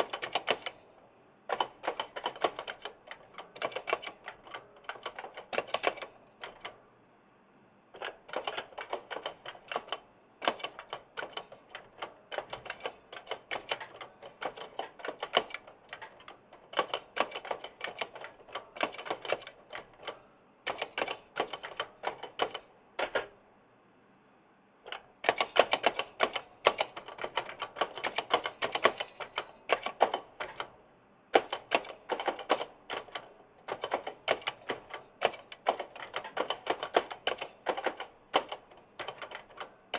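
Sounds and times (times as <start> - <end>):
mechanical keyboard key clicks: 1.5 - 6.8, 8.0 - 23.3, 24.9 - 30.7, 31.4 - 39.7.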